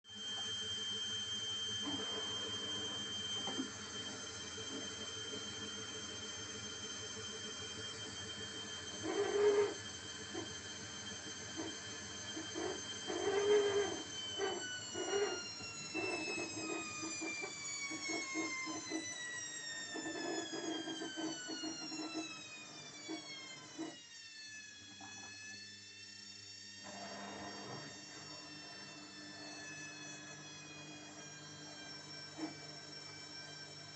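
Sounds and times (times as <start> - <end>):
high motor whine: 0.1 - 33.9
washing machine squeaking: 8.9 - 10.6, 11.3 - 24.0.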